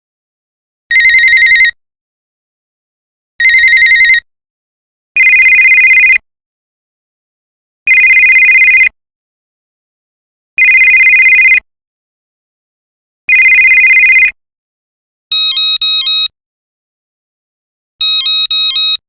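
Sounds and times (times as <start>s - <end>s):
telephone ringer trilling: 0.9s - 1.8s, 3.4s - 4.2s, 5.2s - 6.2s, 7.9s - 8.9s, 10.6s - 11.6s, 13.3s - 14.4s, 18.0s - 19.0s.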